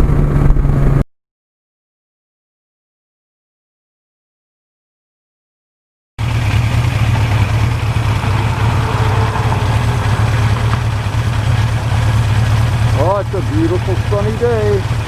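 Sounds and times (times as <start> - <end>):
motorcycle engine idling: 6.2 - 15.0.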